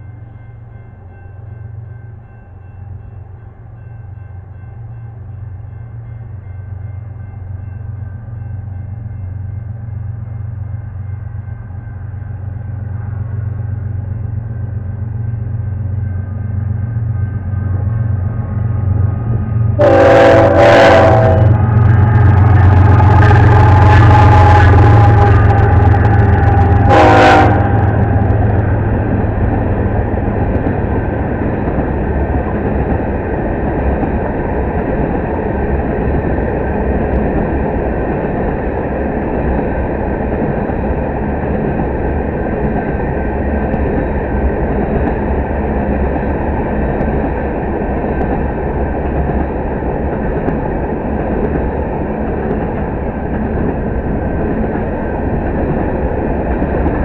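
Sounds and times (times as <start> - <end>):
locomotive engine rumble: 16.4 - 38.3
locomotive horn chord: 19.8 - 28.2.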